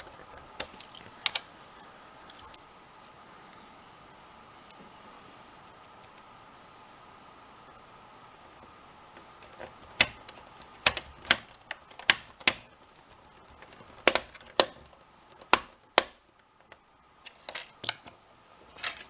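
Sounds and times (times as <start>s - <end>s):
plastic parts clicking: 0.0s - 1.5s, 9.4s - 18.2s.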